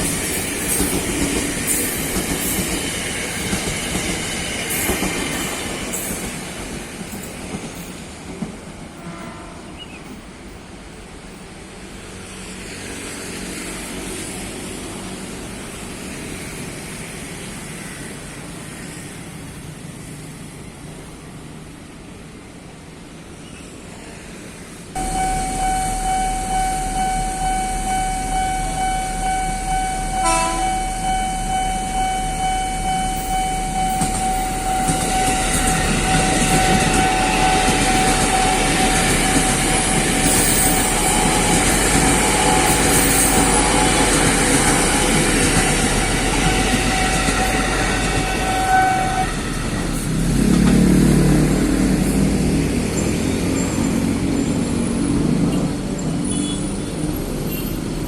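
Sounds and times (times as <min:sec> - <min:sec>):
electric train passing: 0:00.0 - 0:58.0
road vehicle engines rumbling: 0:10.0 - 0:58.0
level crossing alarm ringing: 0:25.0 - 0:49.3.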